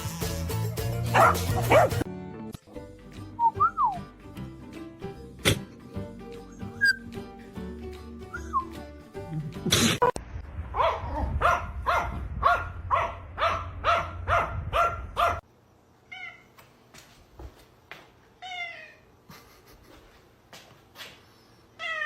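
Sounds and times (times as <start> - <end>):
cat meowing: 21.8 - 22.0.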